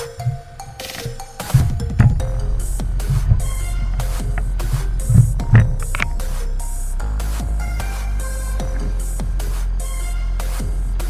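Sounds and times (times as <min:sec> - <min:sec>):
electronic music with heavy bass: 0:00.0 - 0:11.0.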